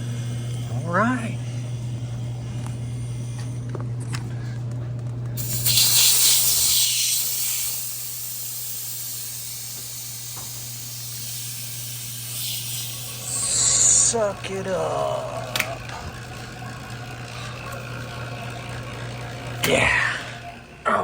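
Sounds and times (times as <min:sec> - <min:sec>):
low hum: 0:00.0 - 0:05.4, 0:12.7 - 0:21.0
gas hissing: 0:05.4 - 0:20.6.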